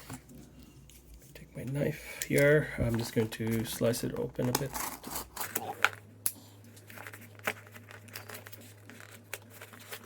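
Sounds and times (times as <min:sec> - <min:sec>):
cardboard crinkling: 0:06.7 - 0:10.0.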